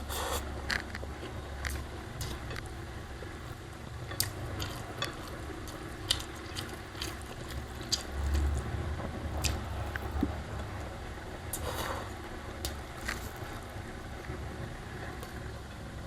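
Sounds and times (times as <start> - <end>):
person chewing food: 0.0 - 10.4, 11.5 - 13.8
low rumble: 6.8 - 16.0.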